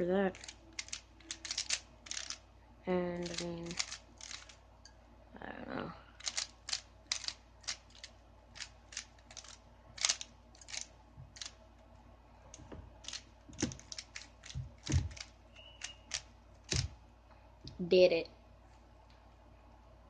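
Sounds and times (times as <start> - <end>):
puzzle cube clicking: 0.3 - 2.4, 3.2 - 4.6, 6.2 - 11.6, 13.0 - 17.0
dull knocks of handling cube: 12.5 - 17.0.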